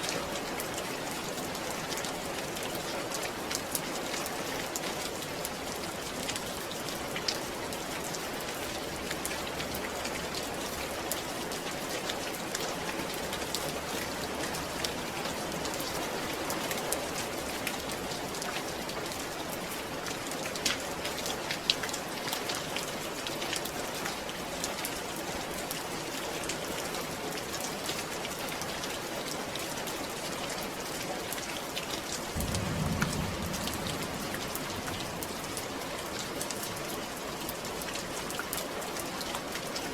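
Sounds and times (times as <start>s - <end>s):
steady rain: 0.0s - 39.9s
low rumble: 32.4s - 36.0s.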